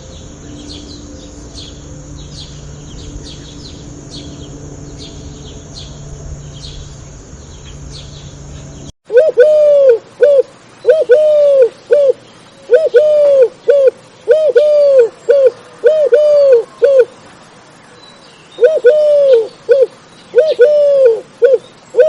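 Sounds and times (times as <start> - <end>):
dove cooing: 9.1 - 17.2, 18.6 - 22.0.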